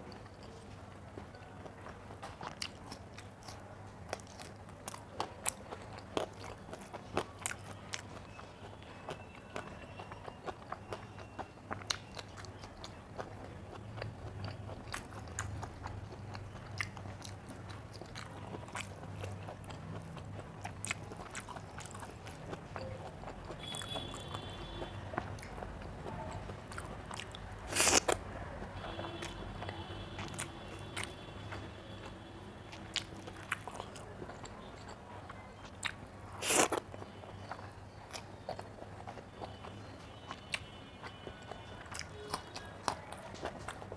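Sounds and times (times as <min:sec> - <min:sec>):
chewing and crunching: 0:00.0 - 0:43.9
wet mouth clicks: 0:27.3 - 0:28.2.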